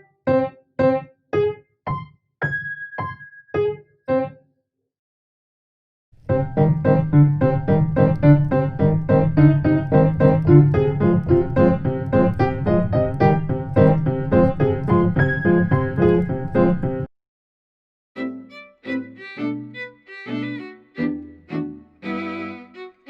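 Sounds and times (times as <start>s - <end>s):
piano playing quick run of notes: 6.3s - 17.1s.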